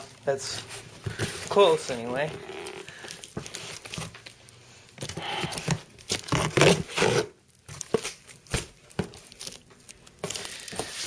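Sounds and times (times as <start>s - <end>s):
packaging being torn open: 5.0s - 11.0s.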